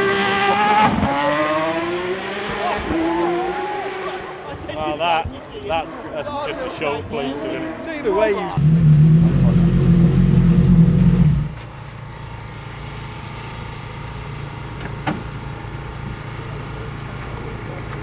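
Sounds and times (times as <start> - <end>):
rally car engine: 0.0 - 4.8, 8.6 - 18.0.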